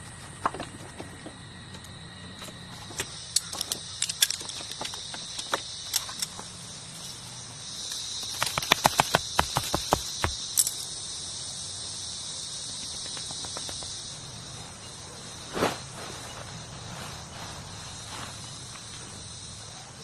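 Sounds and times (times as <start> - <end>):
high-pitched insect drone: 1.4 - 20.0
sharp taps and clicks: 7.9 - 10.4.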